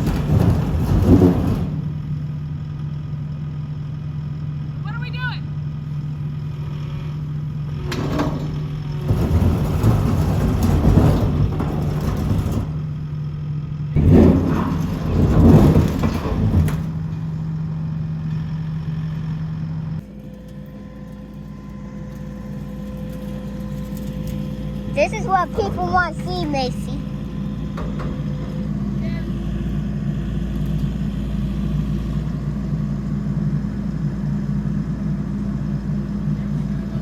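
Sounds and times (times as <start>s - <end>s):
skid steer engine running: 0.0s - 37.0s.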